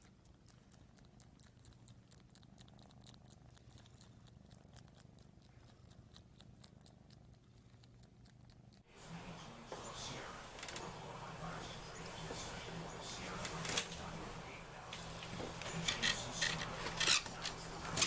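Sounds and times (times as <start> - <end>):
cat purring: 0.0 - 18.0.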